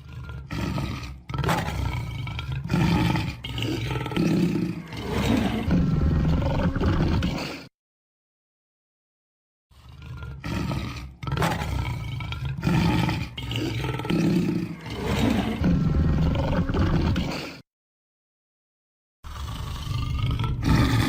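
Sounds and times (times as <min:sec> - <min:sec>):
lion roaring and growling: 0:00.0 - 0:07.7, 0:09.7 - 0:17.6, 0:19.3 - 0:21.0.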